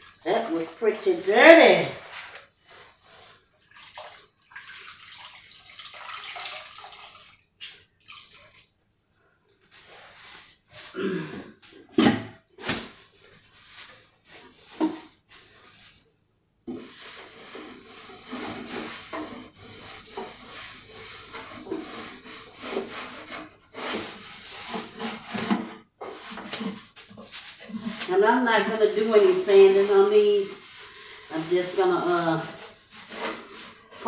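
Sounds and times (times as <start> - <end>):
cloth wiping wood: 16.8 - 34.0.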